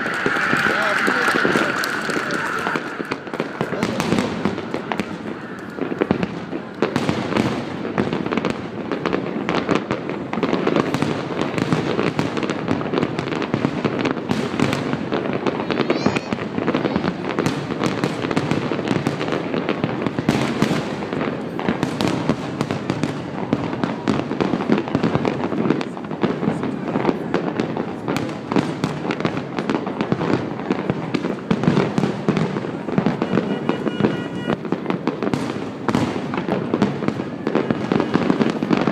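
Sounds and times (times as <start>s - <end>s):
rising firework whistle: 0.0s - 8.9s, 32.3s - 38.9s
fireworks bangs and crackling: 0.0s - 38.9s.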